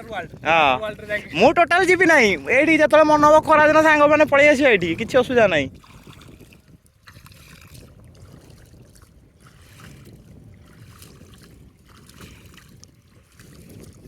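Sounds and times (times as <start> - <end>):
wind rumble on microphone: 0.0 - 14.0
river water trickling: 4.7 - 14.0.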